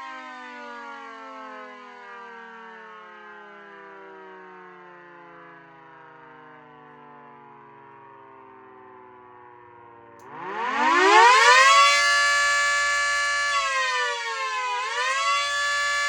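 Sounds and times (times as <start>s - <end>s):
rotating siren winding down: 10.2s - 16.0s.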